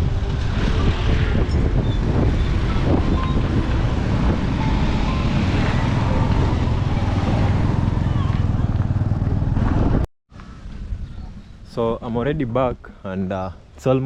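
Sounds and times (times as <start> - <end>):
vehicle running: 0.0 - 10.8
wind buffeting microphone: 0.0 - 12.8.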